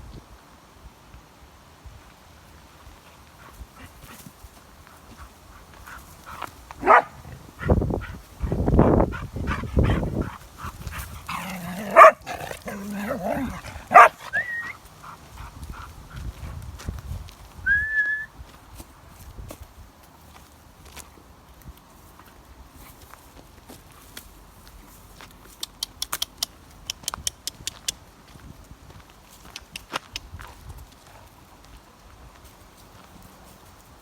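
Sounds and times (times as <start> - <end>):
dog barking: 6.8 - 7.4, 11.4 - 14.5.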